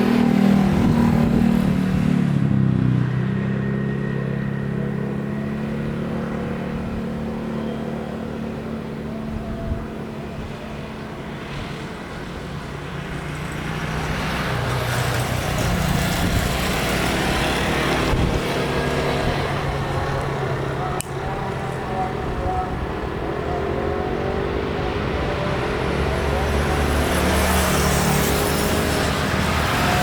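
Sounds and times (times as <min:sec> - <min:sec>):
engine and traffic noise: 0:00.0 - 0:30.0.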